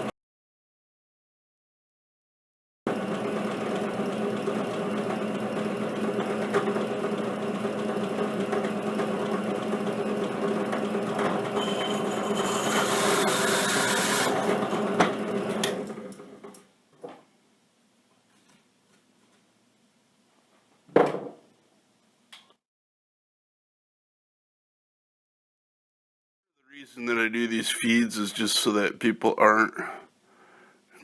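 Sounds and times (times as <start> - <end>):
drill press motor hum: 2.9 - 16.7
core drill grinding stone: 10.3 - 15.8.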